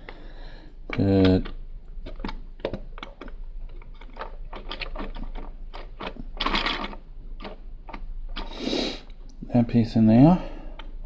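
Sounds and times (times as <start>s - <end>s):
plastic bricks clicking: 0.9s - 8.5s.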